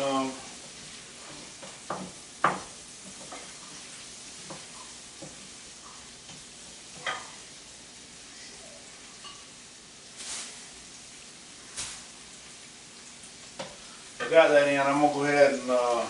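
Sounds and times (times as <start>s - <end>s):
onions sizzling in a pan: 0.0s - 16.0s
utensil knocking against pan: 1.6s - 2.7s.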